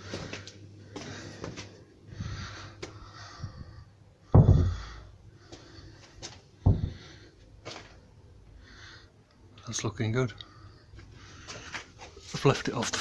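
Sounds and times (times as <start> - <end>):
wooden door thudding shut: 4.3 - 4.9, 6.6 - 7.0
faint knocks and rustling: 4.3 - 8.0.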